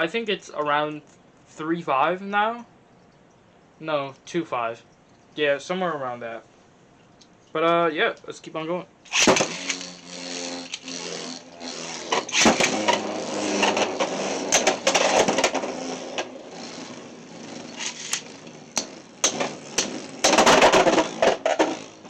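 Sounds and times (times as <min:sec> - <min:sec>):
spinning tops humming: 0:09.1 - 0:22.0
plastic tops clacking and rattling: 0:12.0 - 0:16.9, 0:17.6 - 0:22.0.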